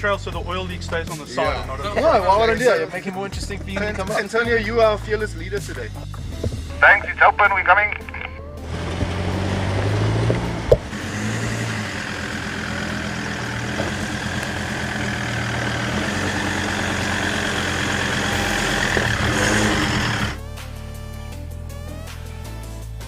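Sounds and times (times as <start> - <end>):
vehicle engine running: 6.4 - 20.4.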